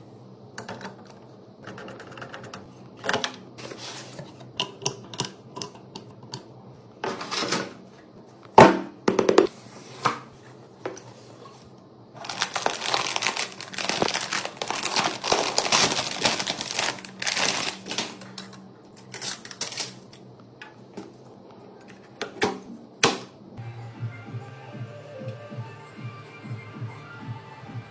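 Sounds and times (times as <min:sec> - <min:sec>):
rustling: 0:12.2 - 0:18.2.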